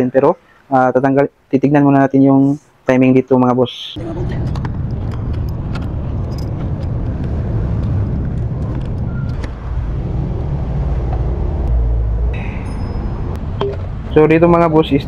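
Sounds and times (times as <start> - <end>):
low motor rumble: 4.0 - 14.5.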